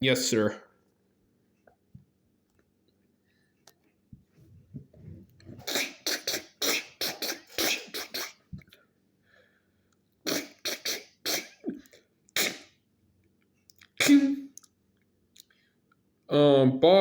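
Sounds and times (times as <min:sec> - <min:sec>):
breathy mouth sound effects: 0:05.4 - 0:08.5, 0:10.3 - 0:12.7.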